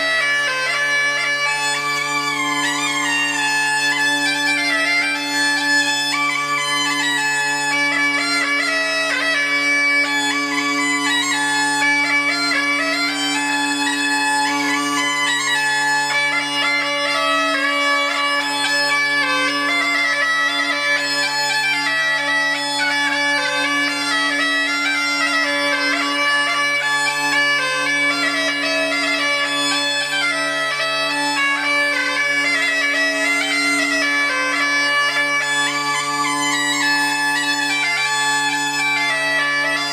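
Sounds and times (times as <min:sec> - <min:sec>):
bagpipes playing a tune: 0:00.0 - 0:39.9.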